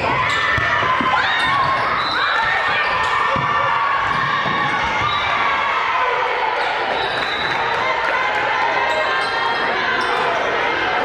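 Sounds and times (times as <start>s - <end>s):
sneakers squeaking on hardwood: 0.2s - 5.3s.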